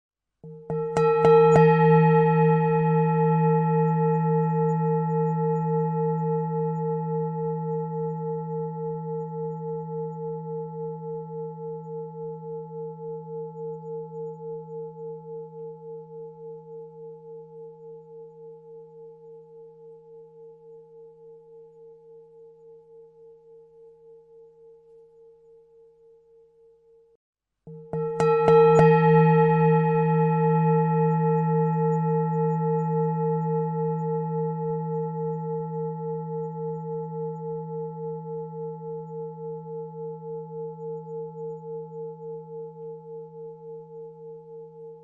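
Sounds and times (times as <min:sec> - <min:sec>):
singing bowl ringing: 0:00.4 - 0:45.0.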